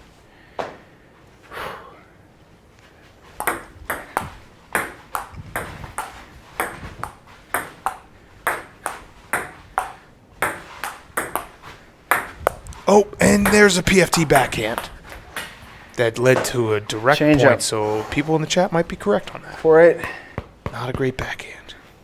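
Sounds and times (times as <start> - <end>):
table tennis ball clicking: 3.4 - 12.7.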